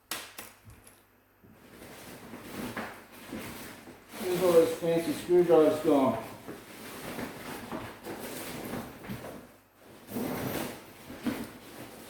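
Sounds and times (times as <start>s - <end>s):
rustling through household things: 0.6s - 12.0s.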